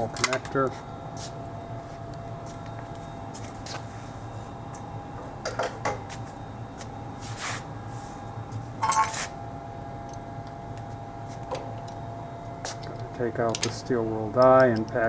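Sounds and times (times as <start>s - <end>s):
steady hum: 0.0s - 15.0s
metal clank with short ring: 8.8s - 9.2s
metal tools clinking and knocking: 8.8s - 9.2s.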